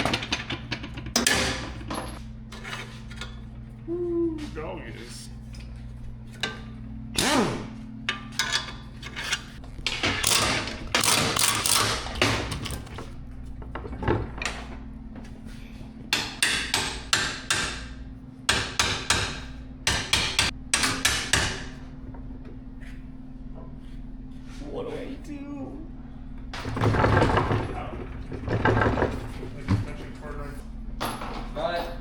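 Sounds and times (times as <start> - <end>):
steady low hum: 0.0 - 32.0
hammer striking metal: 16.1 - 17.9, 18.5 - 21.8.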